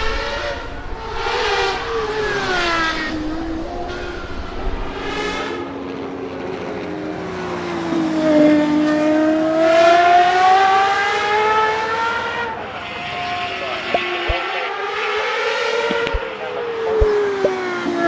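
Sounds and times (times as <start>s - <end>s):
sports car engine accelerating: 0.0s - 5.5s.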